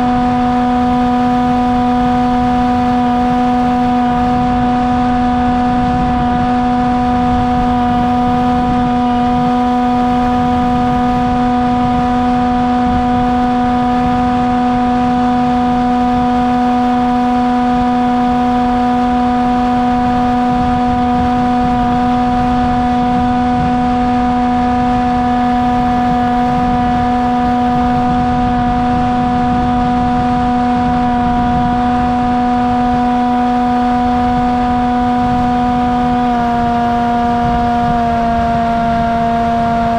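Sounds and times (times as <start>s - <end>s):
electric motor and propeller whine: 0.0s - 39.9s
rushing wind noise: 0.0s - 39.9s.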